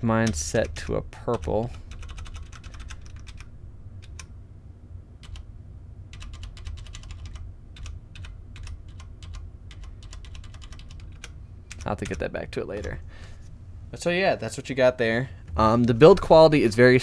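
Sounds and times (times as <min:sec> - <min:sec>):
low steady hum: 0:00.0 - 0:17.0
mechanical keyboard keystrokes: 0:01.3 - 0:04.3, 0:05.2 - 0:05.4, 0:06.1 - 0:13.0.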